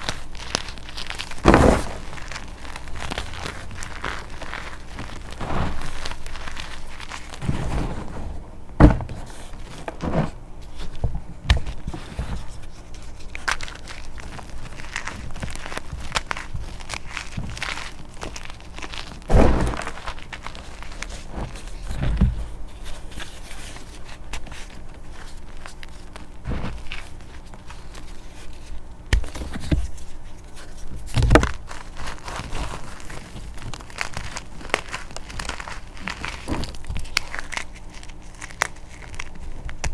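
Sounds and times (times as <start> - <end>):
chalk crunching by hand: 0.0 - 8.6
chalk crunching and crackling: 0.0 - 11.0, 11.6 - 39.9
sharp thuds: 1.4 - 6.6, 7.3 - 10.5, 19.3 - 20.3.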